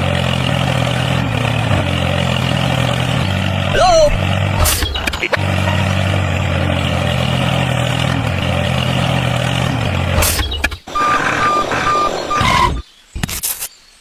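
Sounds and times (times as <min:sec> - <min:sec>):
truck engine running: 0:00.0 - 0:12.8
reversing alarm beeps: 0:10.9 - 0:12.8.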